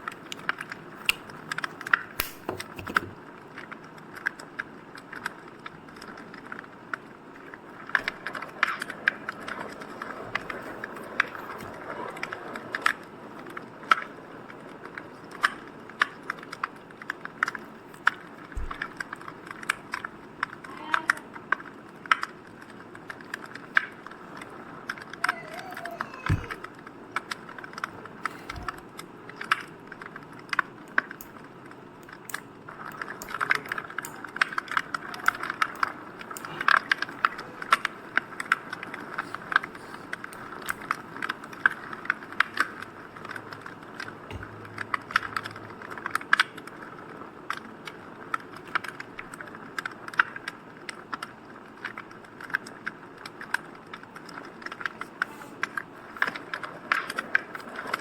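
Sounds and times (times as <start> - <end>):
fire crackling: 0.0 - 58.0.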